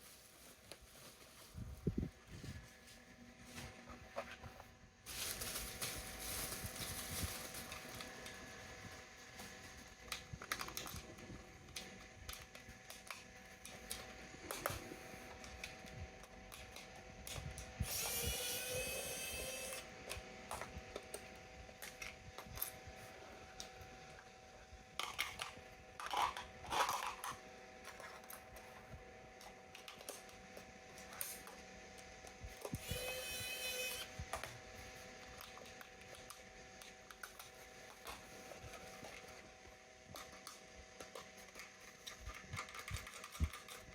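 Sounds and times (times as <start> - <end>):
plastic clicks and handling: 10.0 - 17.7, 40.1 - 43.9
small electric motor whirring: 17.8 - 20.0, 32.5 - 34.5.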